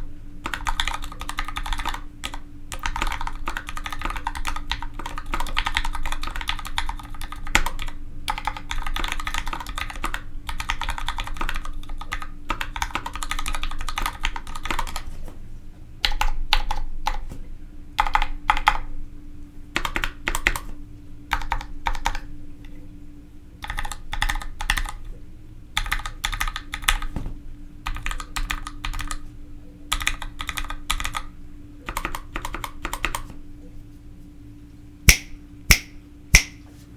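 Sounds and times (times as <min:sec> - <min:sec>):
mechanical keyboard typing: 0:00.4 - 0:15.1, 0:19.8 - 0:20.7, 0:21.3 - 0:22.3, 0:23.6 - 0:25.1, 0:25.8 - 0:27.1, 0:27.9 - 0:29.2, 0:29.9 - 0:33.3.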